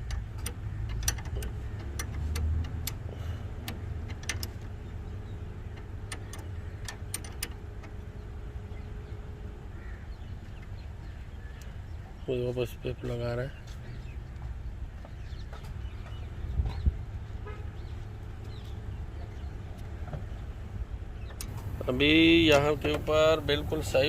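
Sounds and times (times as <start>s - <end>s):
metallic clicks and taps: 0.0s - 4.7s, 5.7s - 8.0s
low steady rumble: 0.0s - 12.7s, 13.8s - 24.0s.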